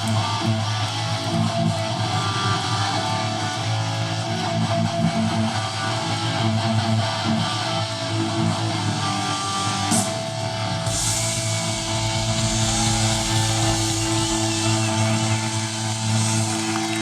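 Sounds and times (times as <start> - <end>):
distorted electric guitars: 0.0 - 17.0
punk band with drums: 0.0 - 17.0.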